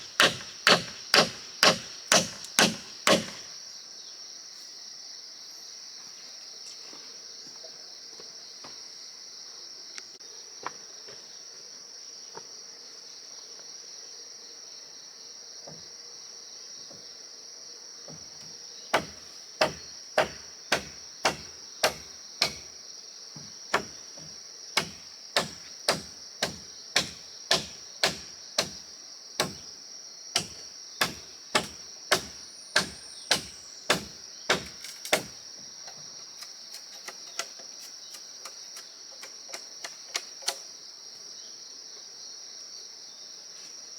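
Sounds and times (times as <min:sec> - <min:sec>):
hammer striking wood: 0:00.0 - 0:03.5, 0:19.0 - 0:22.7, 0:23.7 - 0:28.8, 0:29.4 - 0:29.6, 0:30.4 - 0:35.4.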